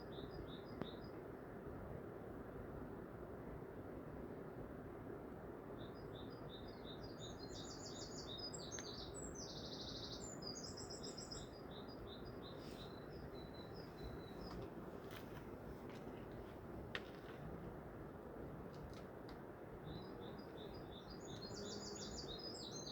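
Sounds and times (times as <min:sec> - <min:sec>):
low background hiss: 0:00.0 - 0:22.9
bird chirping and trilling: 0:20.0 - 0:22.9.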